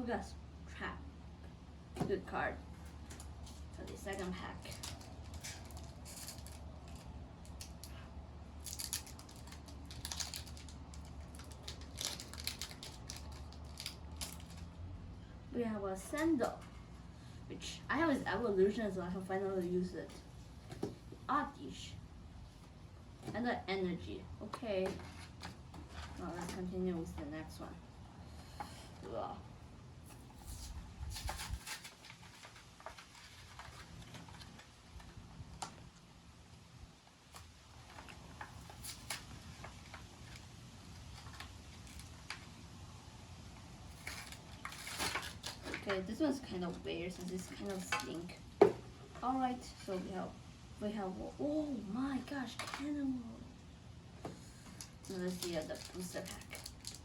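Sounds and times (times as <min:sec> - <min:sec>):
card pack wrapper crinkling: 0:08.6 - 0:14.7, 0:54.8 - 0:57.0.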